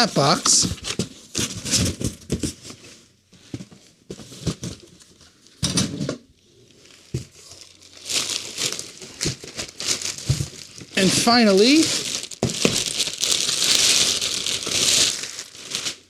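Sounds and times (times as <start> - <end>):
packing material crinkling: 6.7 - 16.0.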